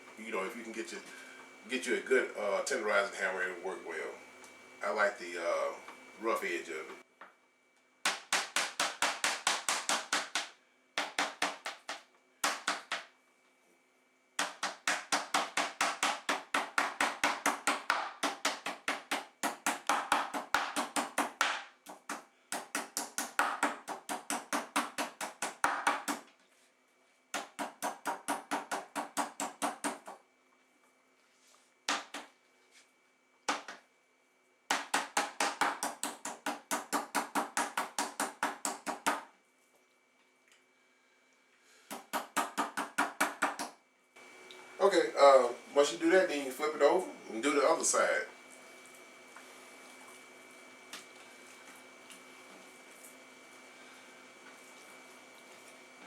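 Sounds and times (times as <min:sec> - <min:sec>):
meat hammer pounding meat: 0:08.0 - 0:13.1, 0:14.4 - 0:26.3, 0:27.4 - 0:30.2, 0:34.7 - 0:39.3, 0:41.9 - 0:43.7.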